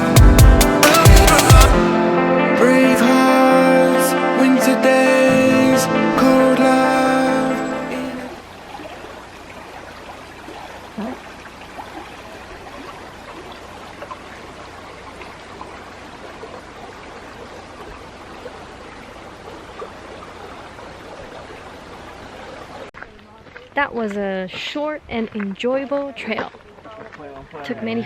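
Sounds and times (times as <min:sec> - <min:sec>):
background music: 0:00.0 - 0:08.4
running water rushing: 0:02.9 - 0:23.7.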